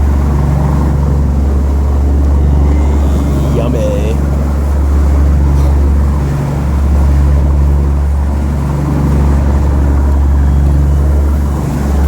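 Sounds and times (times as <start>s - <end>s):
boat engine drone: 0.0s - 12.0s.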